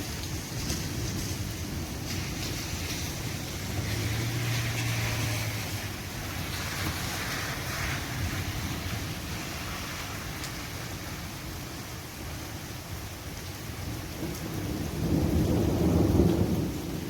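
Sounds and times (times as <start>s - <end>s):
thunderstorm roaring: 0.0s - 11.2s, 14.0s - 17.0s
low thunder rumble: 0.0s - 11.5s, 13.9s - 17.0s.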